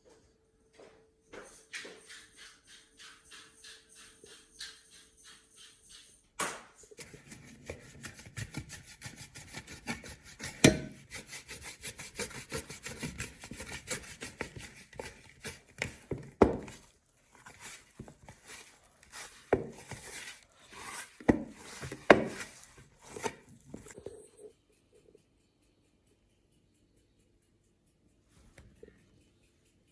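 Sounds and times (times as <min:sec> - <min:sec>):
scraping on a wooden surface: 0:07.0 - 0:24.0.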